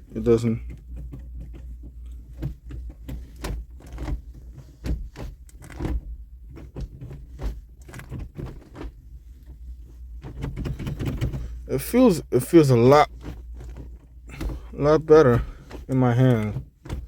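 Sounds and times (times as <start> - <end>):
gear shift lever clicks and knocks: 0.0 - 17.0
low steady hum: 0.0 - 17.0.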